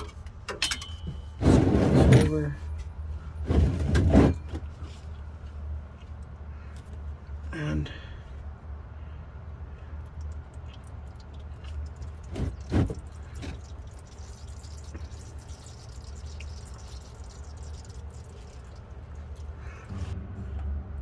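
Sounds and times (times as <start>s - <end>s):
oil dripping and spattering: 8.4s - 20.1s
low hum: 17.3s - 21.0s.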